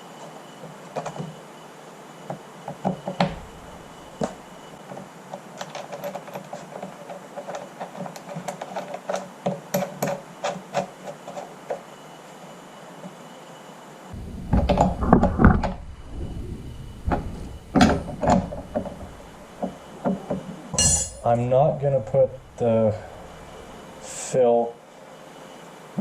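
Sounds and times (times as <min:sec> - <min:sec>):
clicks taps and knocks of handling parts: 0:04.2 - 0:11.8.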